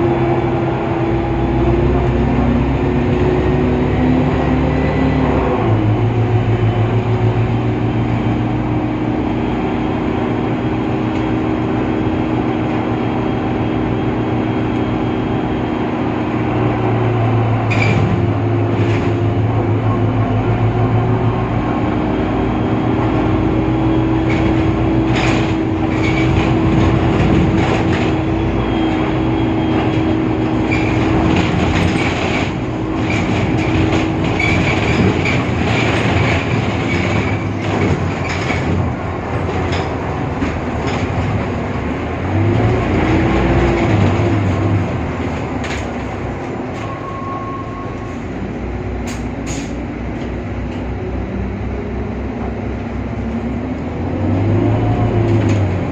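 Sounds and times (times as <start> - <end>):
bus engine droning: 0.0 - 55.9
knocks and rattles: 24.2 - 28.4, 29.9 - 41.8.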